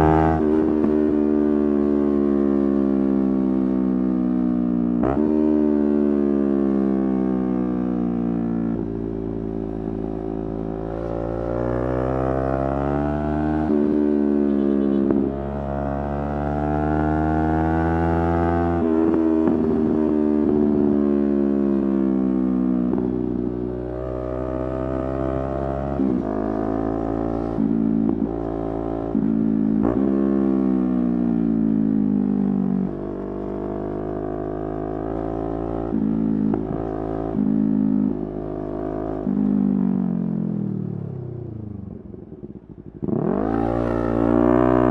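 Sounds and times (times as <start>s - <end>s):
motorcycle engine accelerating: 0.0s - 44.9s.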